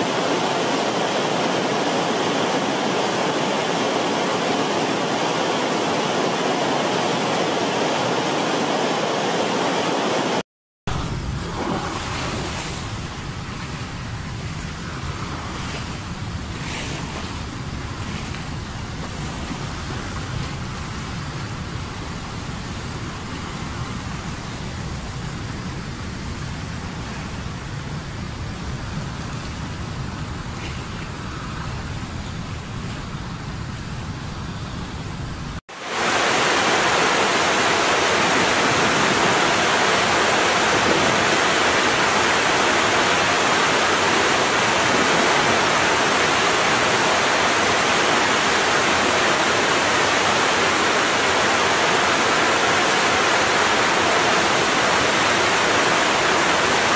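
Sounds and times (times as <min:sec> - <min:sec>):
surf: 0:00.0 - 0:34.3, 0:35.7 - 0:56.9
wind: 0:00.0 - 0:56.9
roar of falling water: 0:35.7 - 0:56.9.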